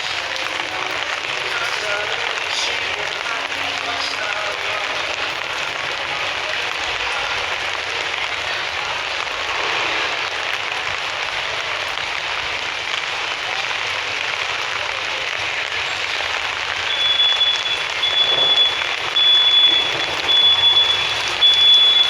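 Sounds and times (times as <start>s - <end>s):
rain falling on street: 0.0s - 22.0s
high electronic beep: 16.9s - 22.0s.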